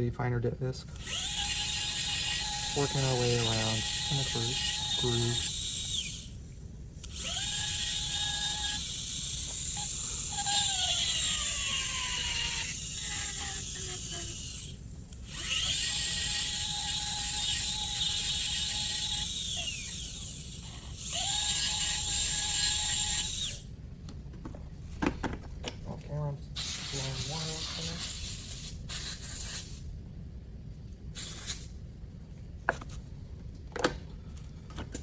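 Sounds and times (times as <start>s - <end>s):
dental handpiece whining: 0.9s - 23.7s, 26.6s - 29.9s, 31.2s - 31.8s.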